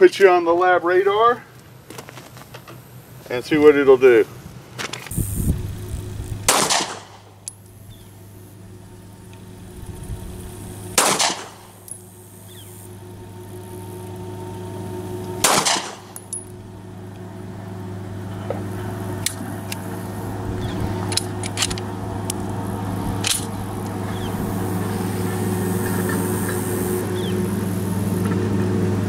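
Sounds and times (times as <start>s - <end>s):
steady low hum: 0.0s - 29.0s
pistol shots: 6.5s - 7.4s, 11.0s - 11.7s, 15.4s - 16.2s.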